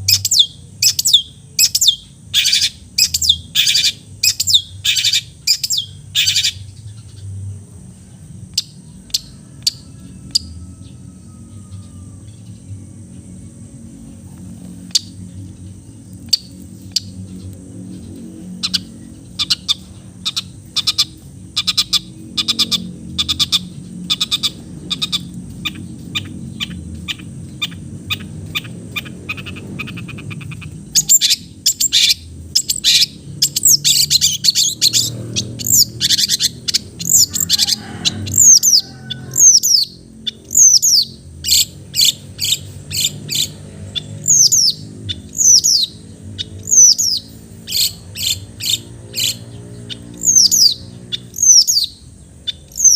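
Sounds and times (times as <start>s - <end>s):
bird singing sharp high chips: 0.0s - 7.1s, 16.2s - 37.5s, 39.3s - 52.9s.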